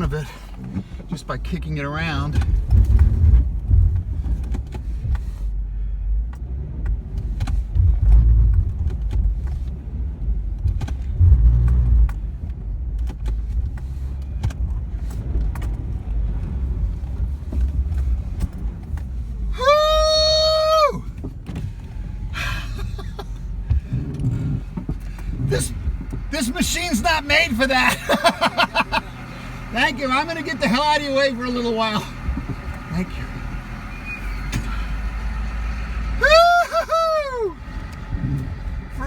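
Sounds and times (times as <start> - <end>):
car engine rumbling: 0.0 - 39.0.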